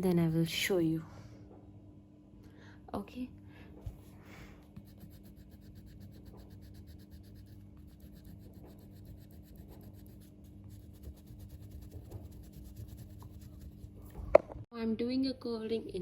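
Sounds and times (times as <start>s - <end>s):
low steady hum: 0.0s - 16.0s
colouring scratching on paper: 4.0s - 14.3s.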